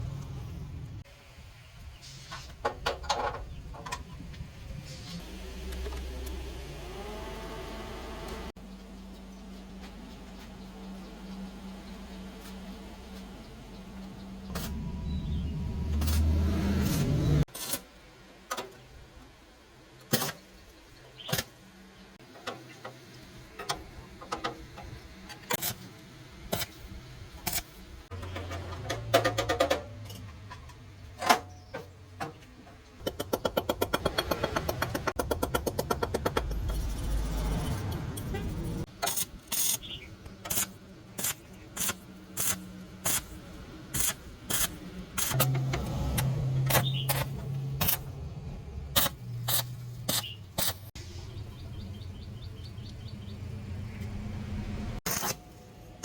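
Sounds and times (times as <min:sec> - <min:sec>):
sharp clicks and knocks: 0:27.4 - 0:39.8.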